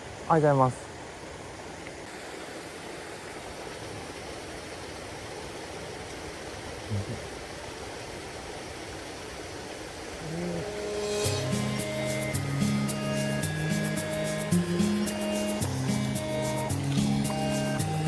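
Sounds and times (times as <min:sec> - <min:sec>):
running water rushing: 0:00.0 - 0:18.0
background music: 0:10.4 - 0:18.0.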